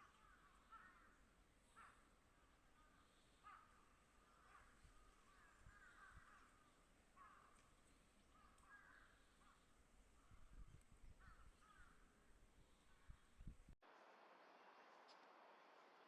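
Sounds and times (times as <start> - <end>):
distant crows cawing: 0.0 - 12.2.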